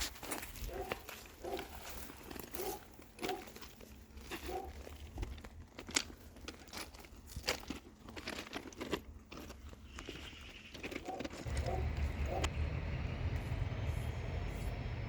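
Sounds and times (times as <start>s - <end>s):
crunching and rustling: 0.0s - 12.4s
low rumble: 11.4s - 15.0s.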